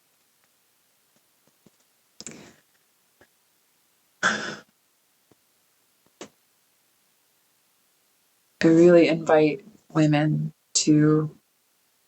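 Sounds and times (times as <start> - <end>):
woman breathing: 2.2 - 2.7.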